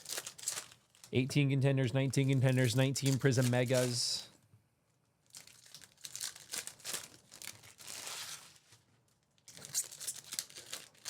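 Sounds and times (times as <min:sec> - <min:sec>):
card packs tearing open: 0:00.0 - 0:01.2, 0:02.2 - 0:04.2, 0:05.2 - 0:08.7, 0:09.4 - 0:11.0
foil wrappers crinkling: 0:00.0 - 0:01.2, 0:02.2 - 0:04.3, 0:05.2 - 0:11.0.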